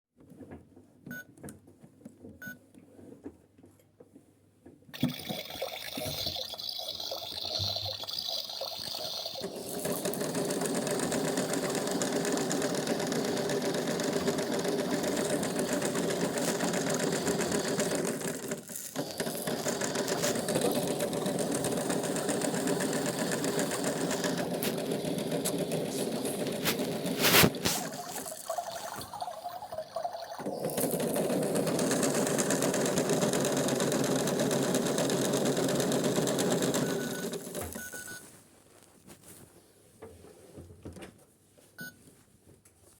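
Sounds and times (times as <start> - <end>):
washing machine water rushing: 5.0 - 37.8.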